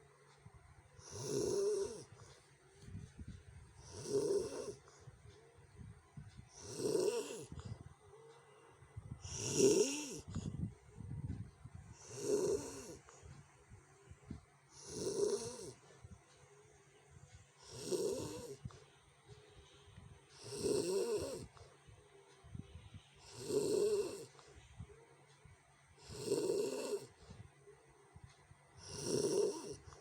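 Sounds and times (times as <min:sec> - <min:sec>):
person snoring harshly: 0:01.0 - 0:02.2, 0:03.8 - 0:04.8, 0:06.6 - 0:07.7, 0:09.2 - 0:10.5, 0:12.0 - 0:13.1, 0:14.8 - 0:15.8, 0:17.6 - 0:18.6, 0:20.4 - 0:21.6, 0:23.2 - 0:24.4, 0:26.0 - 0:27.2, 0:28.8 - 0:30.0.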